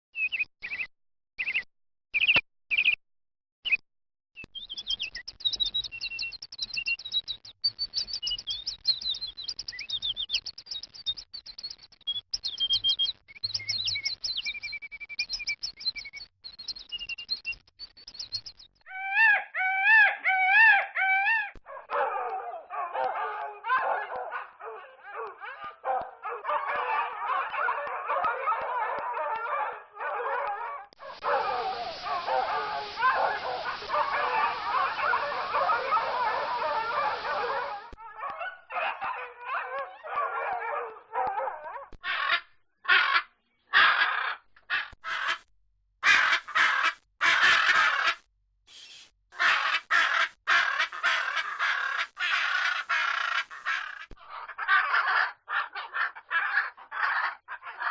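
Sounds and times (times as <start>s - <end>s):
hounds baying and yelping: 18.9s - 42.4s, 49.4s - 57.9s
macaw squawking: 42.0s - 45.4s, 46.0s - 48.2s, 49.4s - 57.9s.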